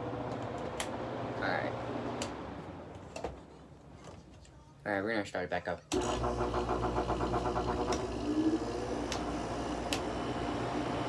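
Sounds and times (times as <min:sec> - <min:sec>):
air conditioner humming: 0:00.0 - 0:11.0.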